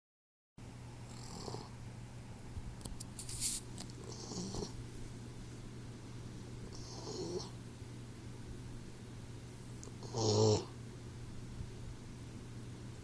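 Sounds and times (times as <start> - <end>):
puppy snoring with whistle: 1.1 - 1.8, 4.1 - 4.7, 6.7 - 7.6, 10.0 - 10.7
rustling: 3.2 - 3.9.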